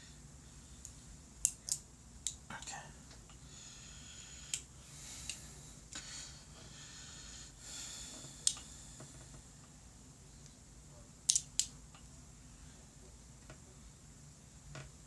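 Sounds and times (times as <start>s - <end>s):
magnetic pieces clicking: 1.4s - 2.4s, 11.3s - 11.7s
soft breathing: 2.8s - 9.6s.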